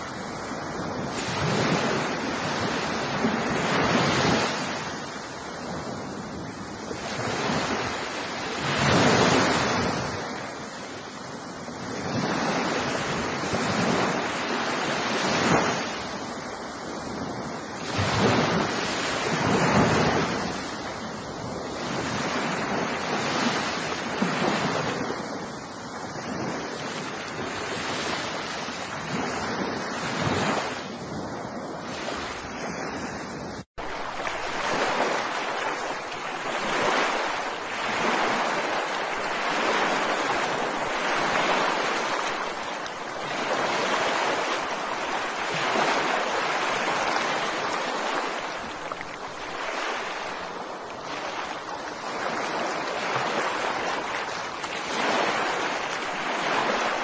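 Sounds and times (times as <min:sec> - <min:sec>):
ocean waves breaking: 0:00.0 - 0:57.0.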